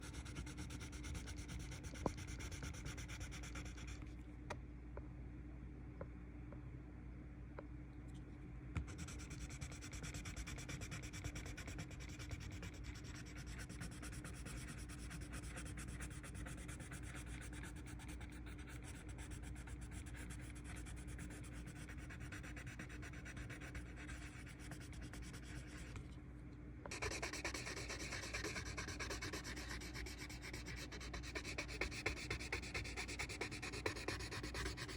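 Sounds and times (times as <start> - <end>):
pencil shading on paper: 0.0 - 4.0, 8.9 - 25.9, 26.9 - 34.9.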